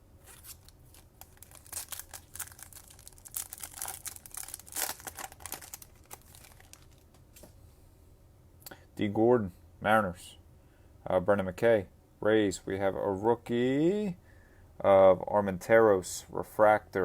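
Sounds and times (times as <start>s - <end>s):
foil wrapper crinkling and tearing: 0.2s - 7.2s.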